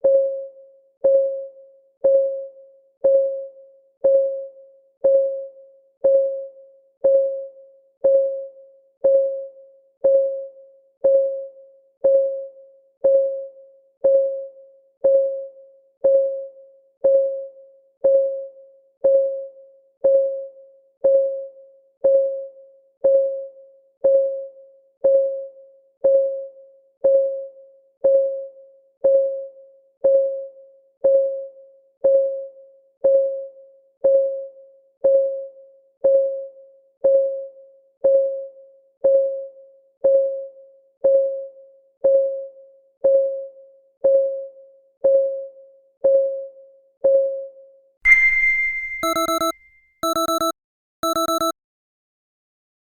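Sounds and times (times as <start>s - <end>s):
clock ticking: 49.0s - 51.5s.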